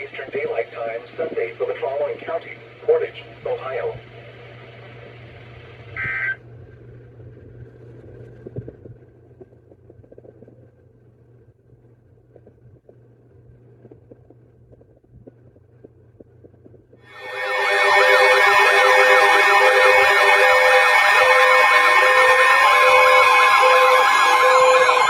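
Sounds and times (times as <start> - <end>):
low steady hum: 0.0 - 25.0
light crackle: 4.1 - 17.1
electronic data tone burst: 6.0 - 6.4, 17.1 - 25.0
faint thin tone: 17.1 - 25.0.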